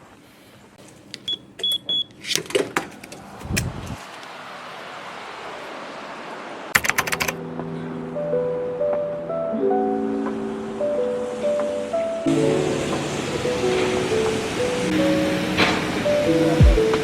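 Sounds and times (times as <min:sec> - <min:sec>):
run of sharp clicks: 0:06.8 - 0:07.4.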